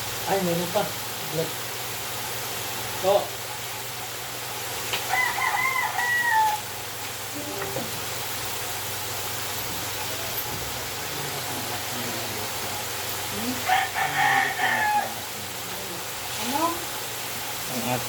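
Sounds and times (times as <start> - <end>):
steady background hiss: 0.0 - 18.0
rooster crowing: 5.0 - 6.8, 13.3 - 15.8.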